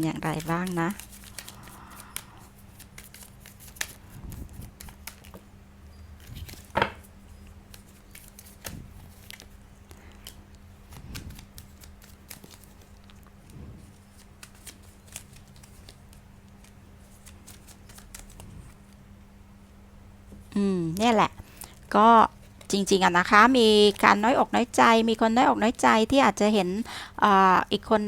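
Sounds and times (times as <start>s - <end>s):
cards shuffling: 0.2s - 5.4s, 6.2s - 19.0s
cards snapping: 0.4s - 5.4s, 7.7s - 13.2s, 14.2s - 18.5s.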